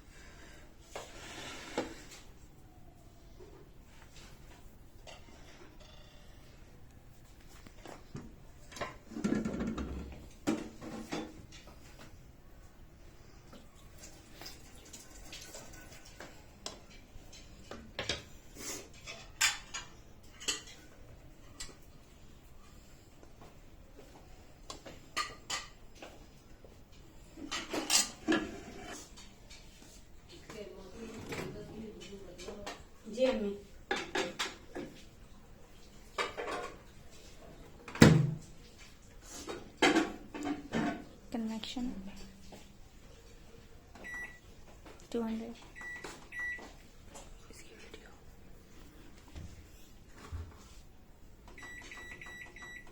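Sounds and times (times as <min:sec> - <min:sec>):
kitchenware clinking and knocking: 0:08.1 - 0:11.7, 0:31.2 - 0:35.0, 0:36.1 - 0:36.9, 0:39.5 - 0:41.2.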